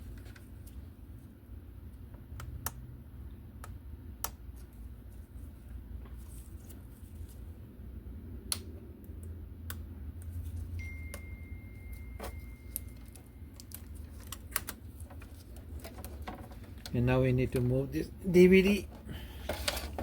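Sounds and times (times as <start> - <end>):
faint high tone: 10.8 - 13.4.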